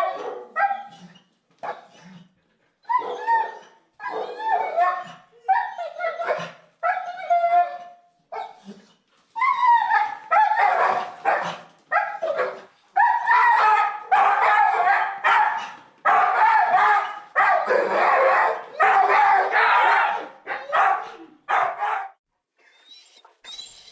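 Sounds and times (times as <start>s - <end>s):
dog barking and yelping: 0.0s - 2.2s, 2.8s - 22.2s.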